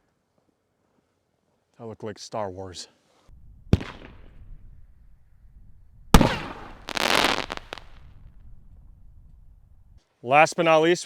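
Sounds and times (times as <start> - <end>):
crackling hiss: 3.3 - 10.0
firework launch crack: 3.6 - 4.8, 6.1 - 9.4
firework shell bursting bang: 6.1 - 8.0.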